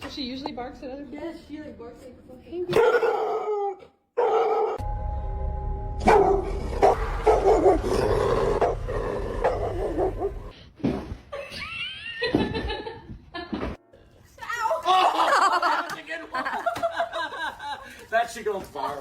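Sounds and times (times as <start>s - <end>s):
low rumble: 4.8s - 10.5s.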